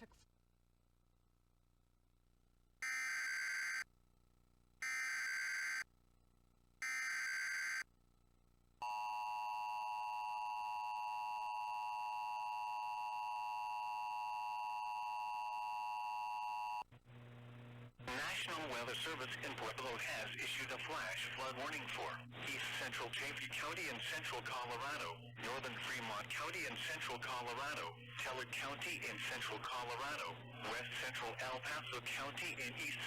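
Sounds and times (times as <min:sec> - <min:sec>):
faint low hum: 0:16.9 - 0:33.0.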